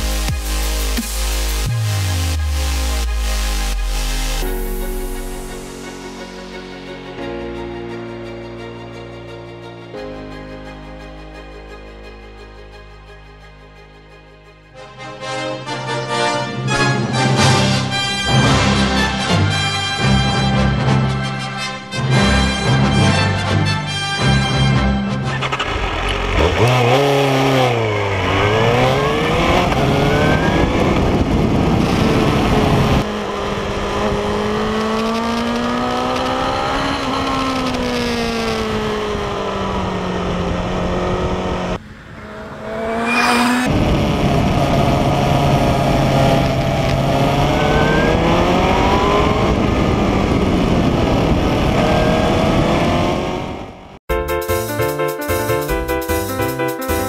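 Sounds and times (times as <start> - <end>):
vehicle engine revving: 25.0 - 54.0.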